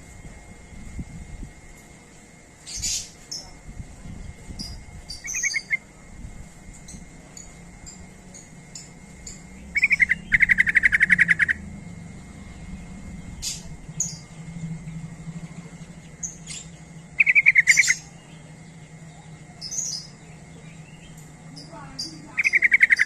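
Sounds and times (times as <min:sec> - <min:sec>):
bird chattering trills: 0:02.6 - 0:03.6, 0:04.4 - 0:06.0, 0:06.7 - 0:11.9, 0:12.9 - 0:23.0.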